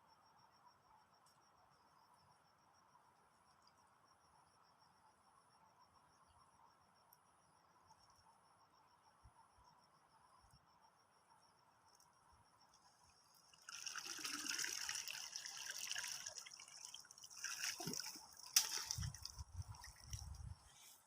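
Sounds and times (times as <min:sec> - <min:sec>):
faint cricket chirping: 0:00.0 - 0:21.0
water splashing and trickling: 0:13.0 - 0:20.8.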